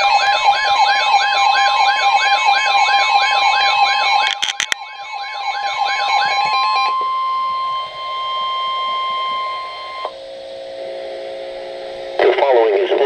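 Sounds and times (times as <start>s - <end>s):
warbling siren: 0.0s - 12.0s
piercing alert tone: 4.2s - 4.8s
sharp clicks: 4.2s - 4.8s.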